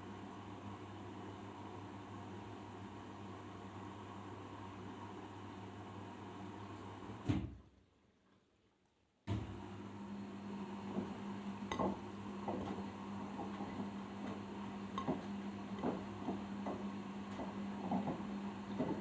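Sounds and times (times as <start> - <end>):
washing machine motor humming: 9.4 - 19.0.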